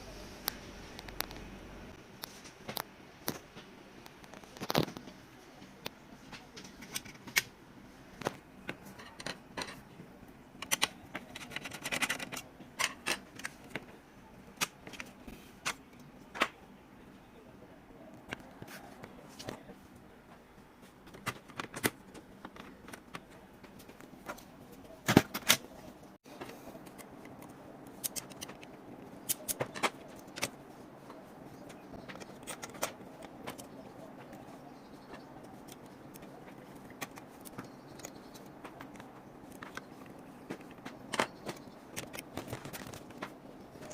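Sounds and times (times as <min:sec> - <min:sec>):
clicks and taps on computer parts: 0:10.6 - 0:13.9, 0:21.1 - 0:24.4, 0:26.4 - 0:30.6.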